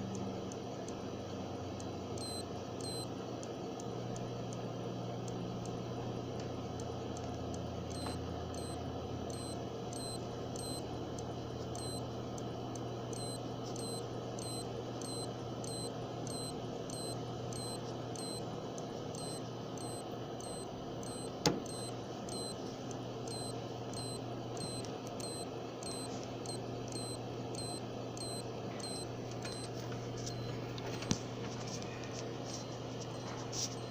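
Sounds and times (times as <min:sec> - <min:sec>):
electrical hum: 0:00.0 - 0:33.9
hard drive clicks: 0:00.0 - 0:33.9
high-pitched electronic chirps: 0:07.9 - 0:10.8, 0:19.1 - 0:22.6, 0:23.3 - 0:29.7.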